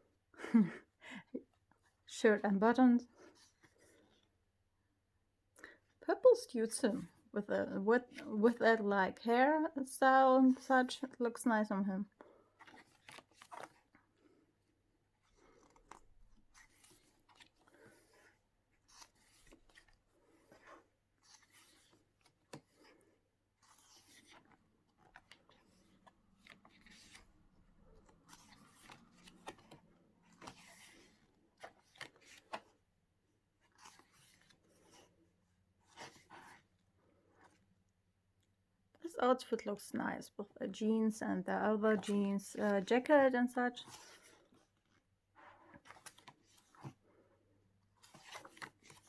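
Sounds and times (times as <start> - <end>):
paper pages rustling: 12.5 - 14.4, 15.2 - 32.9, 33.5 - 35.1, 35.8 - 37.6, 43.8 - 47.2, 47.9 - 49.0.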